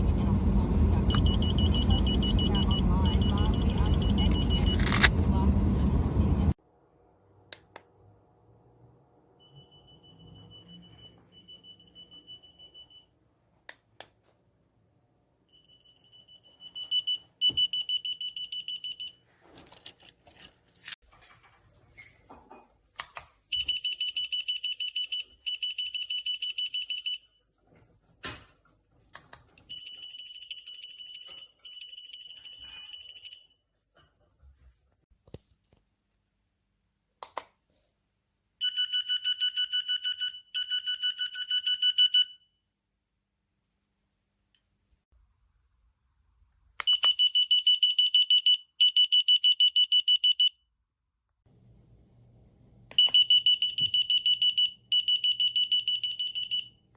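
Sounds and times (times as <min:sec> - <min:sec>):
key finder tag beeping: 0:01.1 - 0:05.1.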